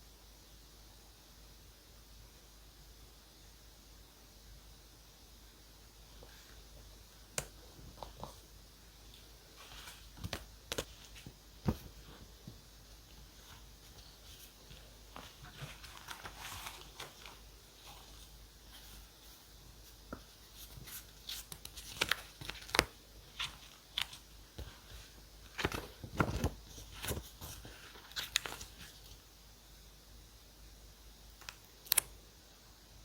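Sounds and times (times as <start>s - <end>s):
paper rustling: 9.1s - 29.2s.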